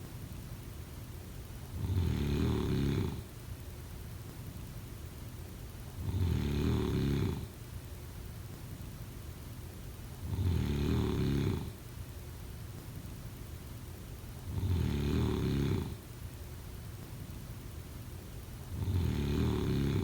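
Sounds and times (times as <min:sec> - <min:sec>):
person snoring: 0:01.8 - 0:03.2, 0:06.0 - 0:07.5, 0:10.3 - 0:11.7, 0:14.5 - 0:16.0, 0:18.8 - 0:20.0
quiet breathing: 0:18.7 - 0:20.0.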